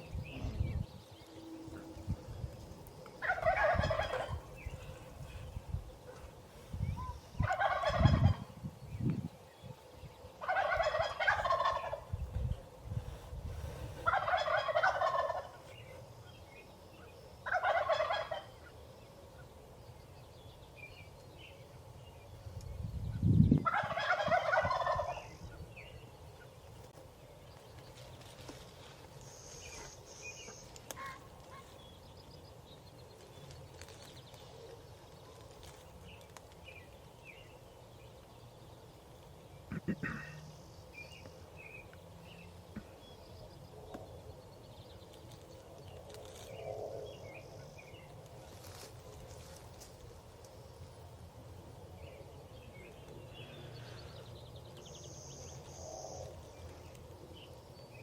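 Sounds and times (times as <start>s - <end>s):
turkey gobbling: 3.2s - 4.4s, 7.4s - 8.4s, 10.4s - 12.0s, 14.0s - 15.6s, 17.5s - 18.5s, 23.6s - 25.3s.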